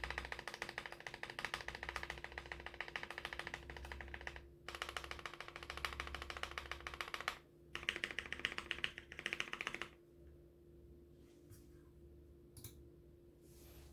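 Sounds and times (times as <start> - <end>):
fast mechanical keyboard typing: 0.0 - 10.0.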